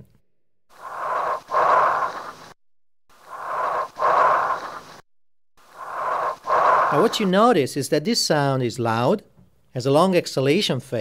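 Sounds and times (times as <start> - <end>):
breath sounds through stethoscope: 0.7 - 5.0, 5.6 - 7.5.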